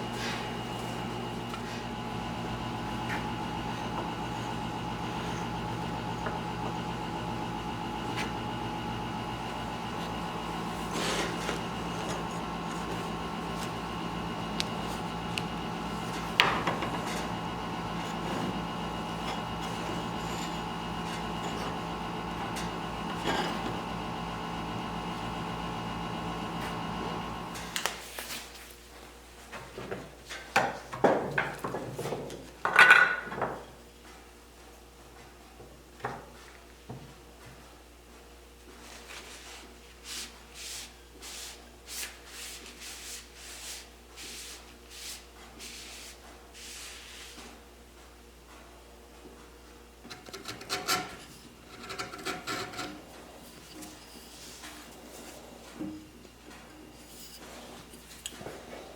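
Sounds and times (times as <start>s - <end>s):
lathe scraping: 0.0s - 27.8s
wood lathe running: 0.0s - 28.0s, 50.2s - 55.8s.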